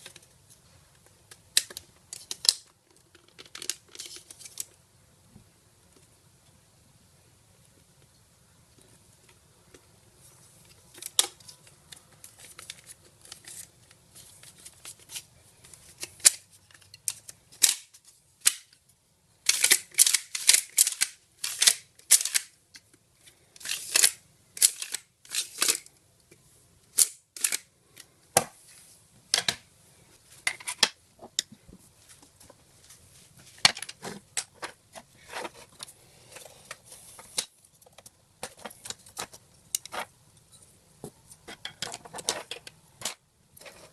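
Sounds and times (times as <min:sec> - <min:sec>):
plastic parts clicking and rattling: 0:01.2 - 0:04.8, 0:10.6 - 0:18.8, 0:19.4 - 0:23.0, 0:23.6 - 0:26.0, 0:26.9 - 0:28.1, 0:33.6 - 0:40.1, 0:41.4 - 0:43.9.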